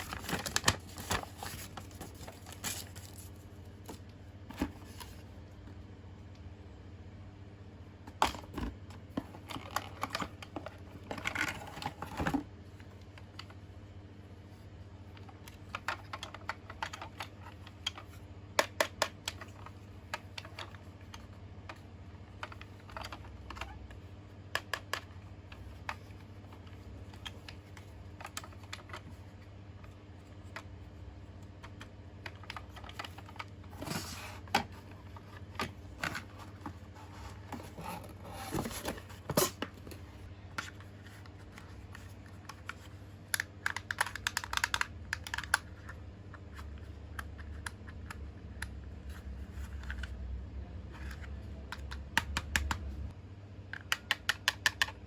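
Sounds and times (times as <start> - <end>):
packaging rustling: 0.0 - 3.9.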